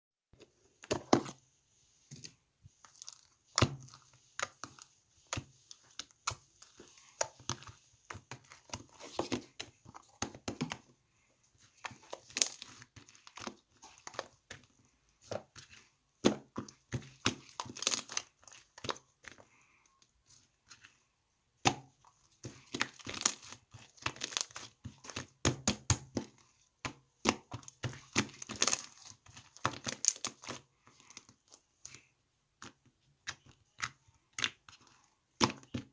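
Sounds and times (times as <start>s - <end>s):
clicks and crinkling of handling: 11.6s - 35.9s.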